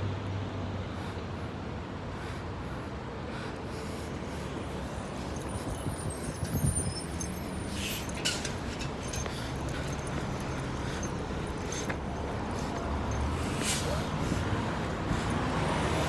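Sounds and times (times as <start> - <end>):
road traffic rumble: 0.0 - 16.0
vehicle passing: 3.6 - 16.0.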